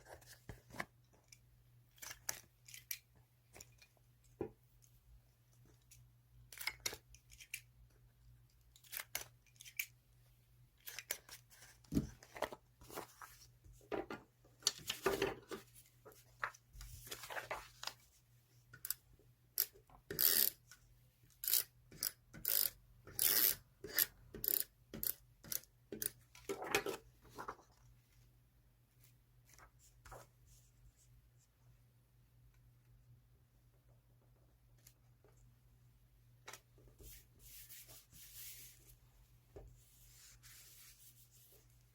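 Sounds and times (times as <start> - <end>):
paper rustling: 14.6 - 18.1.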